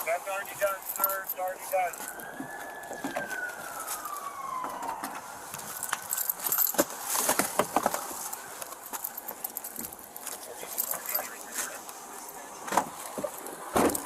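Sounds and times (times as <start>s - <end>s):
police siren wailing: 0.0s - 6.6s.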